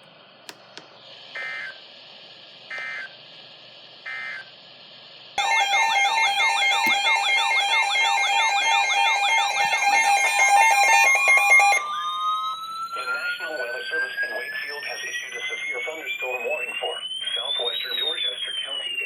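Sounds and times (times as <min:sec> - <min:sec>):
warbling electronic alert tone: 0:05.4 - 0:18.5
digital data bursts: 0:05.4 - 0:19.0.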